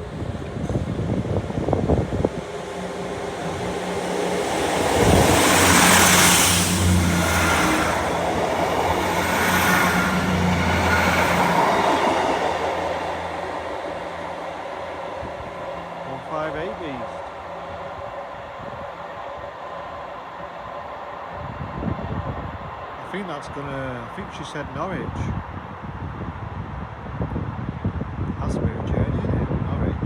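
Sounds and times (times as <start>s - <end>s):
wheels on rail: 0.0s - 23.0s
diesel train engine humming: 0.0s - 24.6s.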